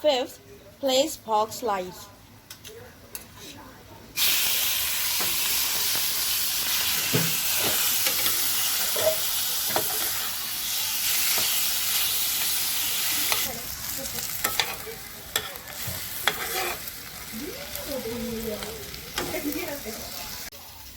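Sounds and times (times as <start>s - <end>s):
meat sizzling in oil: 4.2s - 20.9s.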